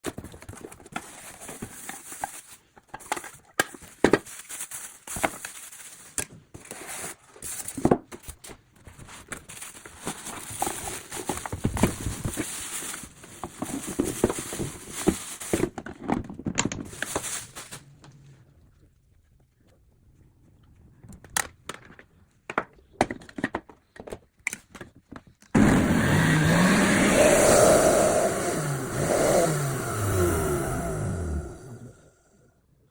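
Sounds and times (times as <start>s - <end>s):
packaging rustling and crinkling: 0.0s - 18.2s.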